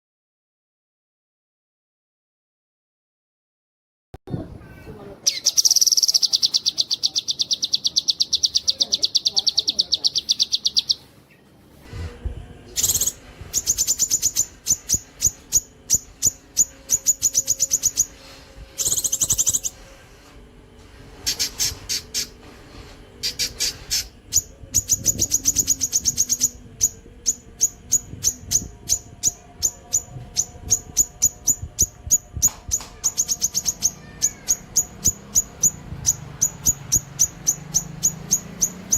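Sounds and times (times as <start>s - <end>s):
bird singing rapid trills: 5.2s - 11.4s, 12.7s - 19.8s, 21.2s - 22.4s, 23.2s - 38.9s.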